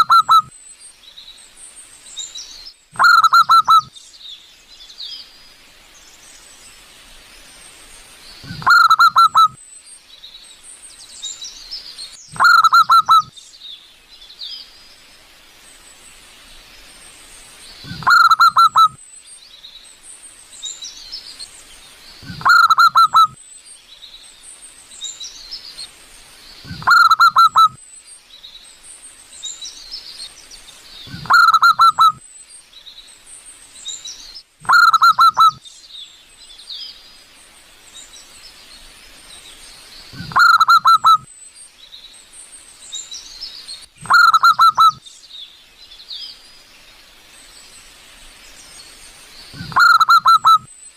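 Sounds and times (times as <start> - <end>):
dove cooing: 0.0 - 0.5, 3.0 - 3.9, 8.4 - 9.5, 12.4 - 13.3, 17.9 - 18.9, 22.2 - 23.4, 26.7 - 27.7, 31.1 - 32.2, 40.2 - 41.2, 49.6 - 50.7
small birds chirping: 0.0 - 50.9.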